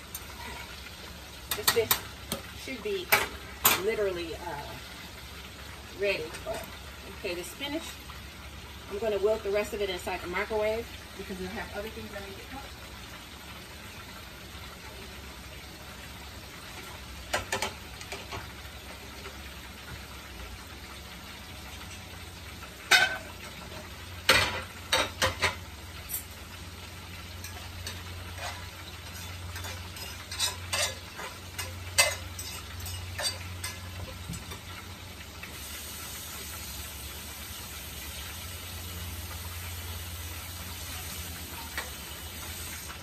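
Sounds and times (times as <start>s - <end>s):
fish sizzling in oil: 0.0s - 43.0s
utensils and dishes clacking: 22.9s - 23.3s, 27.4s - 34.7s.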